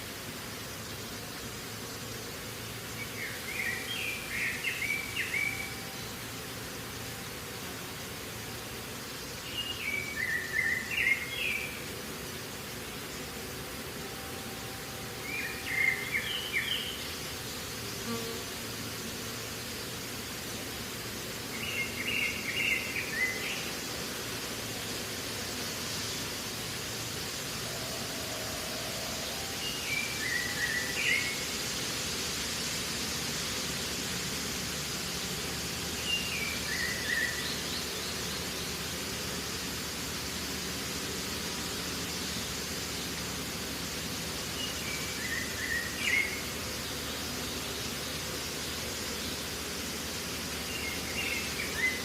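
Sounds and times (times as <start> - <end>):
outdoor ambient hiss: 0.0 - 52.0.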